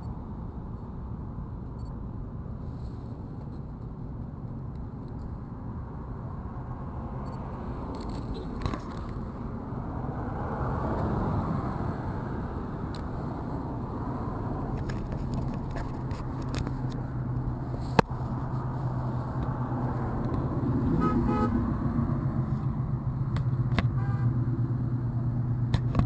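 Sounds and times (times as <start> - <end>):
road traffic passing: 0.0 - 26.0
car horn honking: 8.3 - 8.6, 20.9 - 21.8, 23.9 - 24.4.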